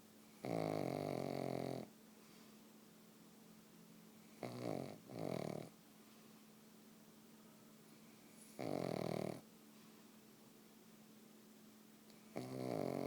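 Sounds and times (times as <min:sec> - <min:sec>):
dog snoring: 0:00.3 - 0:01.9, 0:04.2 - 0:05.8, 0:08.3 - 0:09.5, 0:12.2 - 0:13.0.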